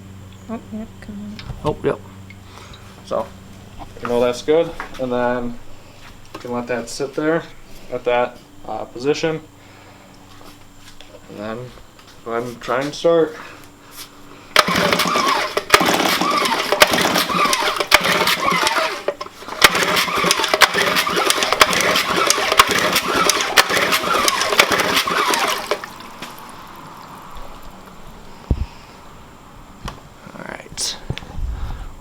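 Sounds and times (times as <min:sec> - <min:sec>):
outboard motor cranking: 0:14.5 - 0:28.5.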